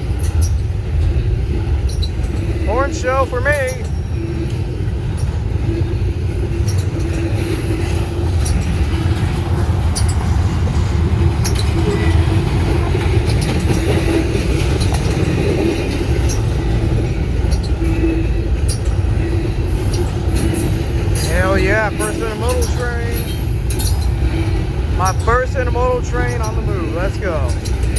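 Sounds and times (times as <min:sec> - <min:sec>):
heavy rumble of train wheels: 0:00.0 - 0:27.9.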